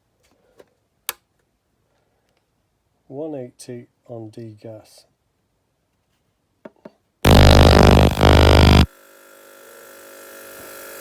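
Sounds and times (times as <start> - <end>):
ultrasonic cleaner buzzing: 7.3 - 8.9.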